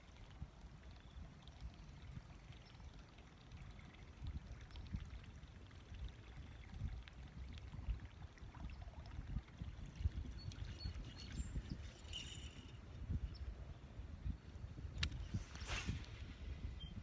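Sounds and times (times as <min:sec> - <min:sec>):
wind buffeting microphone: 0:03.5 - 0:17.0.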